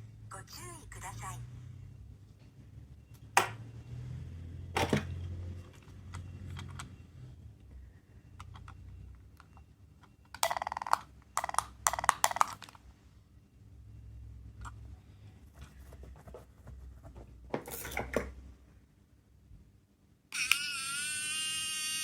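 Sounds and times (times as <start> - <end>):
plastic capsule toy clicking: 10.0 - 12.8.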